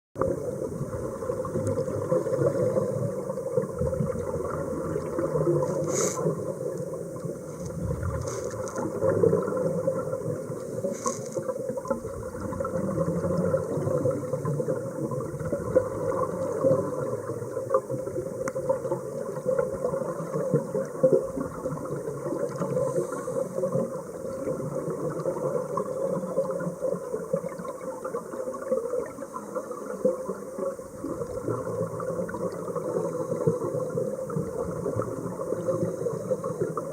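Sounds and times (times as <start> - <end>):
muffled underwater rushing: 0.2 - 36.9
crackling bursts: 5.5 - 9.2.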